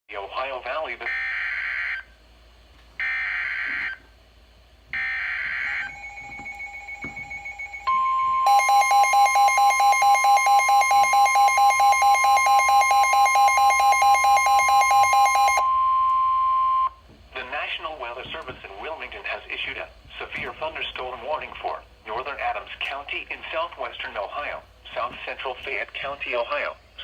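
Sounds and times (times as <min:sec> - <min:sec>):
steady alarm tone: 0:01.0 - 0:02.2, 0:03.0 - 0:04.1, 0:04.9 - 0:17.0
rapid loud beeping: 0:05.0 - 0:17.0.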